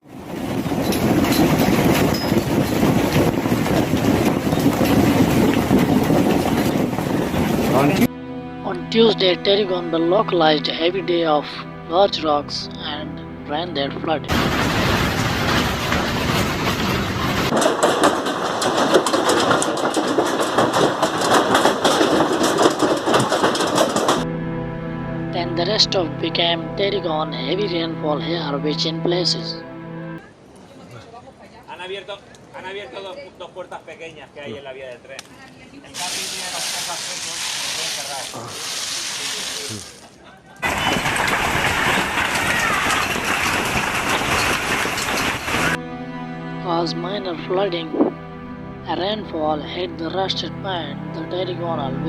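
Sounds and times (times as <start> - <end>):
hail and rain falling: 14.3 - 24.2, 36.0 - 40.0, 40.6 - 45.8
hailstones clicking on hard surfaces: 14.3 - 24.2, 40.6 - 45.8.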